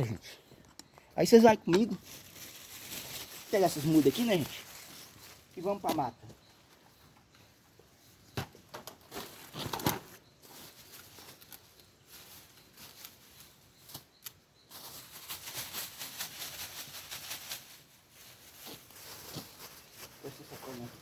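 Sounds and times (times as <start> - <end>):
plastic bag crinkling: 1.7 - 5.8.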